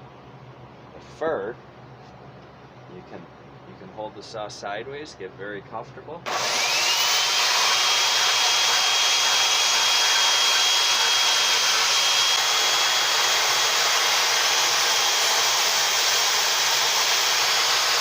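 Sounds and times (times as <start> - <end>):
chainsaw cutting wood: 6.3 - 18.0.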